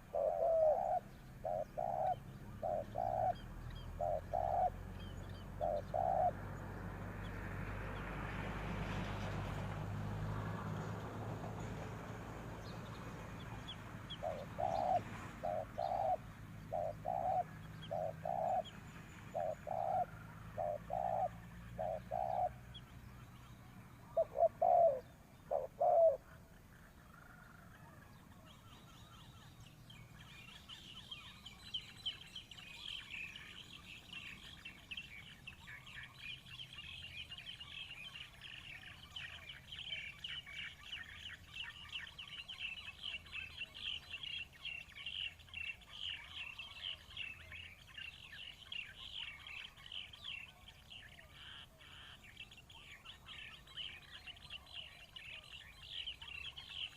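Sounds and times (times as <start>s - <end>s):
dove cooing: 0.0s - 6.5s, 14.1s - 22.7s, 24.1s - 26.6s
small birds chirping: 0.0s - 8.1s, 12.6s - 56.9s.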